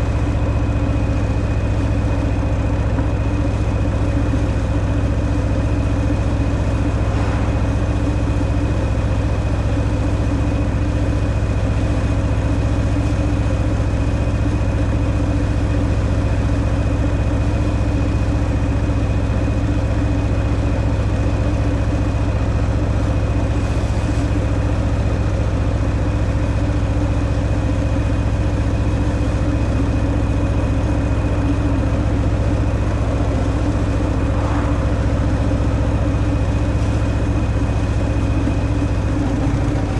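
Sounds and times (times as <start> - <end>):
motorcycle engine running steadily: 0.0 - 39.9.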